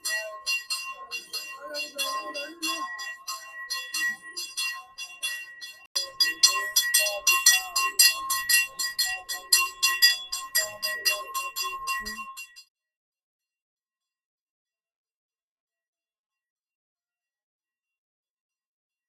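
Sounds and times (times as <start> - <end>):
faint voices: 0.0 - 12.5
small bell rung rapidly: 0.0 - 12.7.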